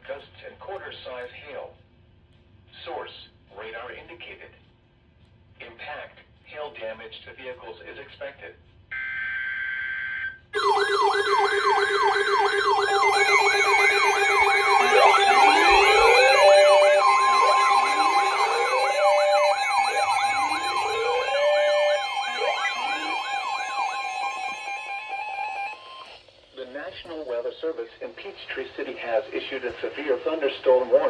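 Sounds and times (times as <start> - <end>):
electronic sirens yelping and wailing: 10.6 - 26.2.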